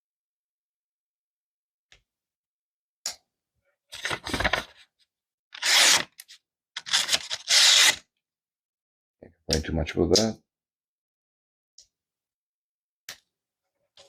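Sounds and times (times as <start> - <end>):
knife blade cutting paper: 5.6 - 8.0.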